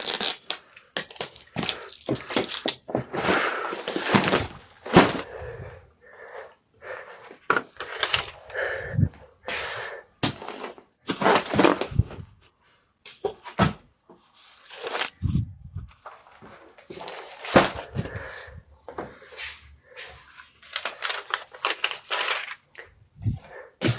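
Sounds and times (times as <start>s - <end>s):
wrapping material rustling: 20.3s - 23.4s.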